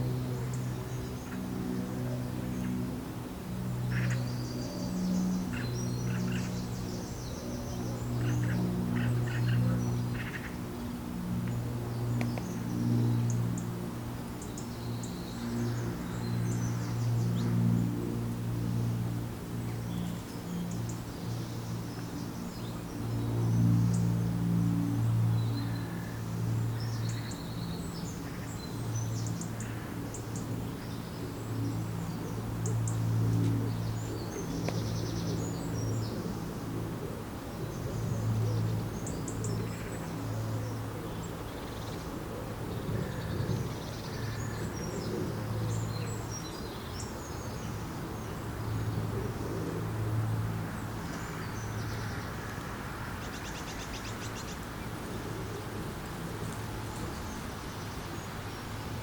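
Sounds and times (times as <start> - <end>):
steady low hum: 0.0 - 59.0
small birds chirping: 3.6 - 13.8, 50.0 - 59.0.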